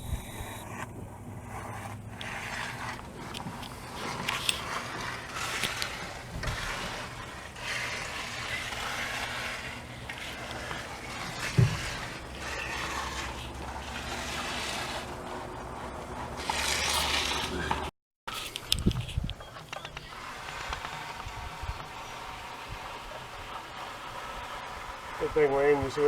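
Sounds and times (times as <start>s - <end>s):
steady low hum: 0.0s - 16.5s
scraping and rattling on concrete: 0.0s - 26.0s
heavy thump: 11.5s - 12.0s.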